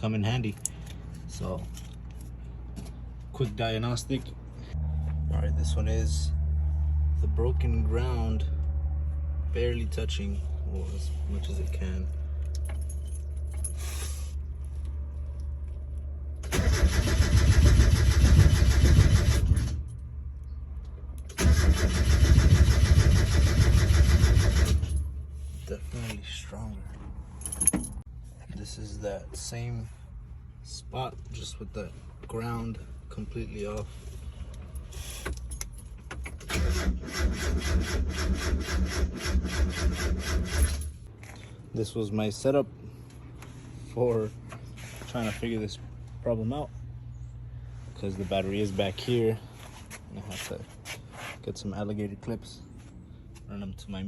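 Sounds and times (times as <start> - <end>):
starter cranking engine: 16.4 - 19.8, 21.3 - 25.0, 36.4 - 40.9.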